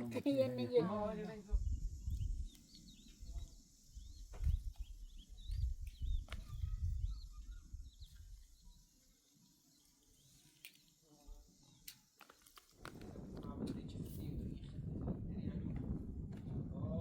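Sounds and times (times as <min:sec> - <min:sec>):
small birds chirping: 0:01.2 - 0:12.8
low gusty rumble: 0:01.3 - 0:02.5, 0:12.9 - 0:17.0.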